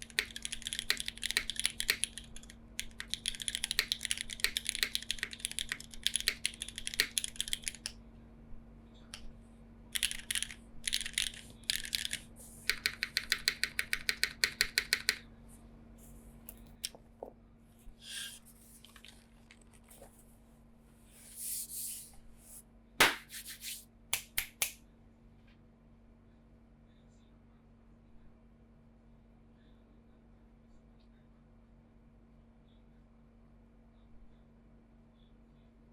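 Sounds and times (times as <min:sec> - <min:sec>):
mechanical keyboard typing: 0:00.0 - 0:07.9, 0:09.9 - 0:15.2.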